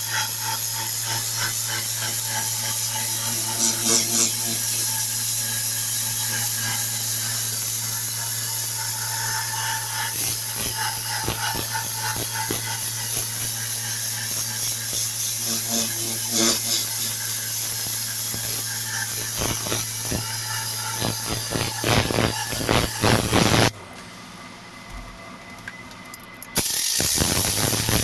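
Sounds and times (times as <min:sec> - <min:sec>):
compressed air hissing: 0:00.0 - 0:23.7, 0:26.6 - 0:28.0.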